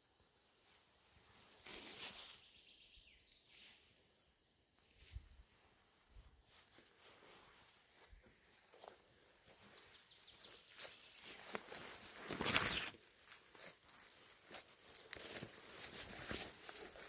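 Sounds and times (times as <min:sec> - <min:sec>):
rustling: 0:01.3 - 0:02.6, 0:04.9 - 0:17.0
footsteps: 0:10.7 - 0:17.0.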